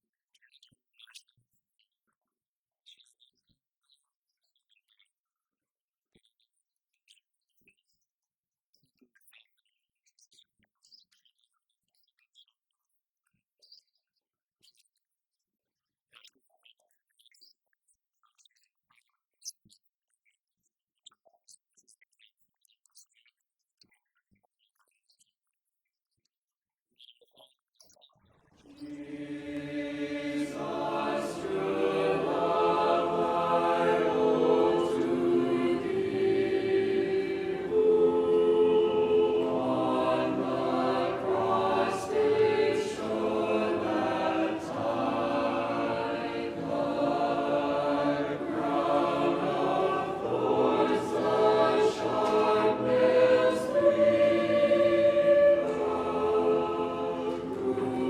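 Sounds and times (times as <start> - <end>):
choir singing: 28.7 - 58.0.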